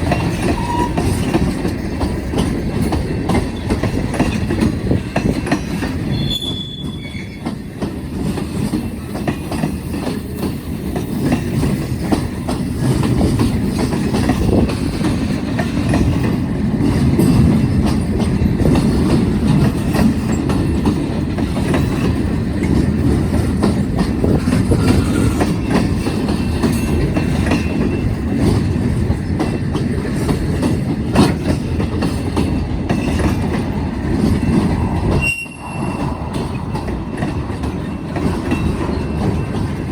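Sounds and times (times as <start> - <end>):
freight train rumble: 0.0 - 39.9
wheels clacking over rail joints: 0.0 - 39.9
faint high wheel squeal: 0.4 - 1.2, 6.1 - 7.5, 35.2 - 36.1.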